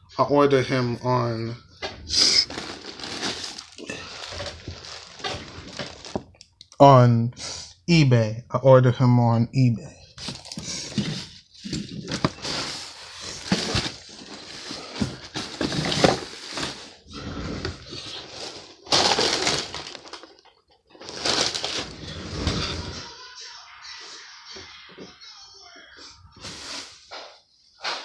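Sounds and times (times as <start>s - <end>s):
plastic packaging crinkling: 2.2s - 6.4s, 10.2s - 17.0s, 17.8s - 23.0s.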